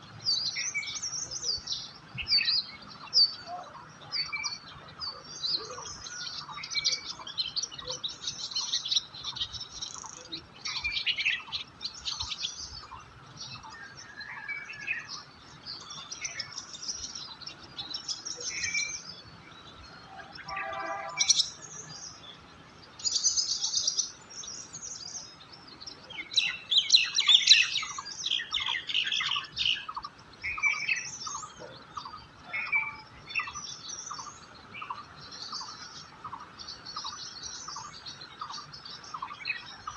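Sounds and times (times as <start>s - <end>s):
songbirds chirping: 0.0s - 39.9s
harsh buzzy bird call: 20.3s - 21.6s.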